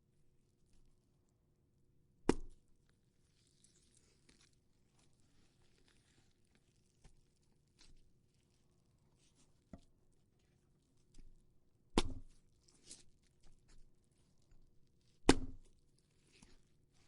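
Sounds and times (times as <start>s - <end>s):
wet crackling and tearing: 2.3s - 9.6s, 12.0s - 17.0s.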